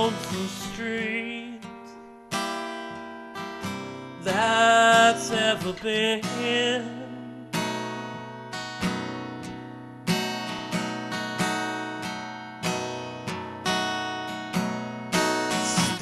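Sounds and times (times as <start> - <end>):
acoustic guitar slow chords: 0.0 - 16.0.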